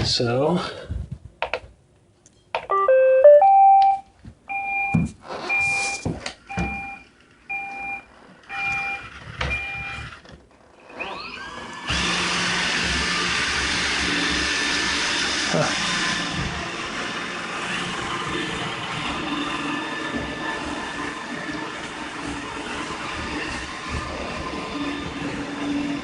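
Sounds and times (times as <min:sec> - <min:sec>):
rising electronic tune: 0:02.7 - 0:04.0
two-tone beeps: 0:02.7 - 0:09.0
robot vacuum motor whine: 0:10.8 - 0:26.0
robot vacuum running: 0:10.8 - 0:26.0.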